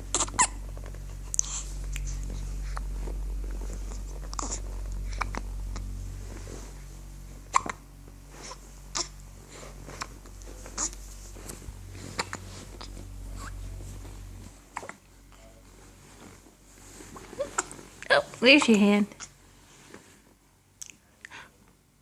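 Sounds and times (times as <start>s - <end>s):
baby hiccuping: 0.1s - 0.6s, 7.5s - 7.8s.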